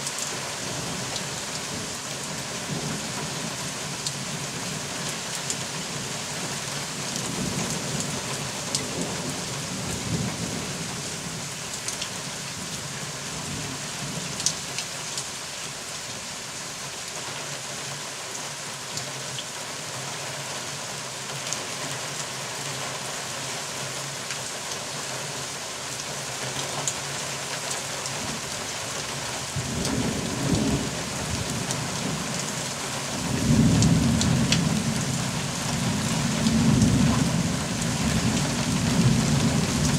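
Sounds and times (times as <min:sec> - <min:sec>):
steady rain: 0:00.0 - 0:39.9
thunder rumbles: 0:29.6 - 0:32.4, 0:33.1 - 0:39.9.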